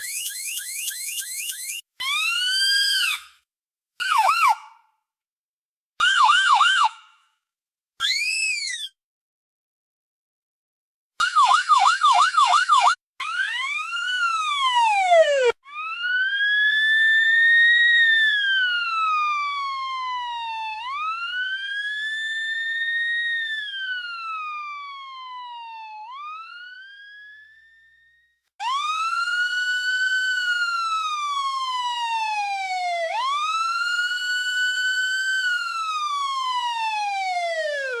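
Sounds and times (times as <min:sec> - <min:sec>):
fire truck siren wailing: 0:06.0 - 0:06.9, 0:11.2 - 0:27.7, 0:28.6 - 0:38.0.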